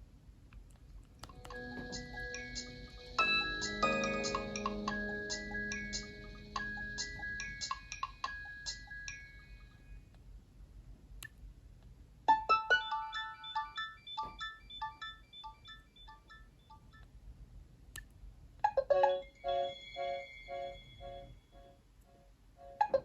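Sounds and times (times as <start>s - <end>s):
phone ringtone melody: 1.3s - 9.4s, 12.6s - 16.8s, 18.9s - 21.8s
ringtone of repeated notes: 1.3s - 9.8s, 12.5s - 17.0s, 18.9s - 21.8s
click: 17.9s - 18.1s.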